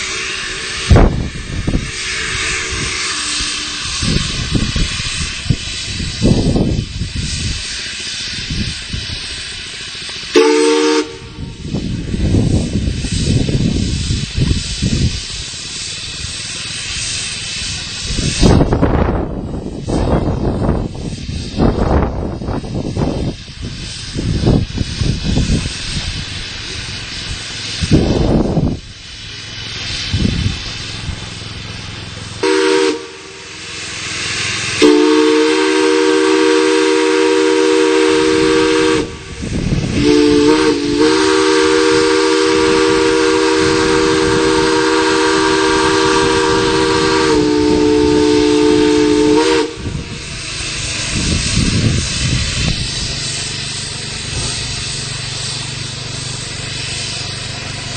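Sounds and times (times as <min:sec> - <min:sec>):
chime steam whistle: 0:00.0 - 0:05.9, 0:10.3 - 0:11.6, 0:32.4 - 0:39.4, 0:40.0 - 0:52.2
steam hissing in bursts: 0:00.0 - 0:57.9.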